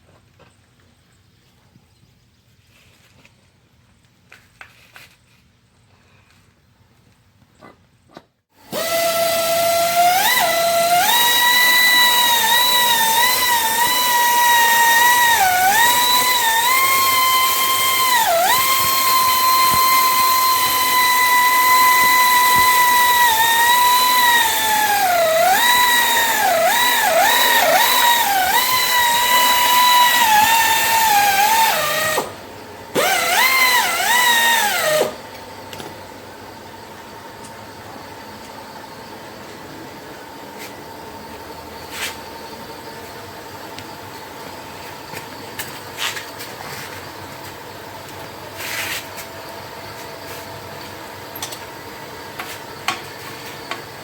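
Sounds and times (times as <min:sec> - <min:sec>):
power tool motor whining: 0:08.6 - 0:35.9.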